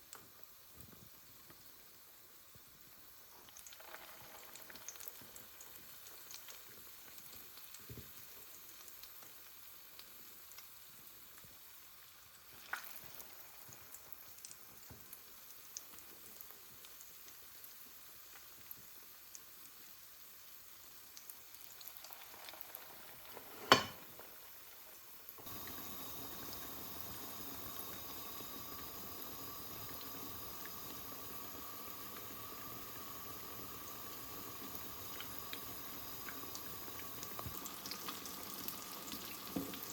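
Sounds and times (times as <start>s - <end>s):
oil sizzling with small pops: 0.0s - 39.9s
steady hiss with hum: 0.0s - 39.9s.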